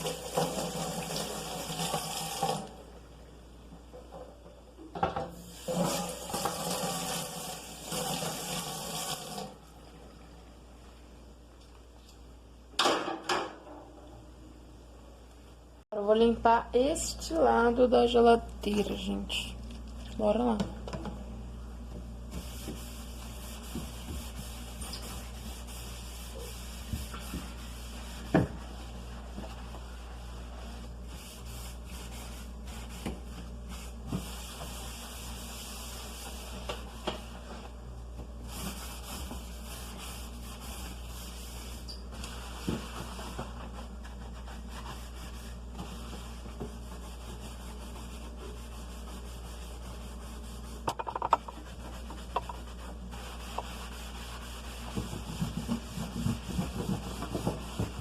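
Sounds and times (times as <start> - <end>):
hand wiping and scrubbing surface: 21.9 - 50.8, 51.4 - 58.0.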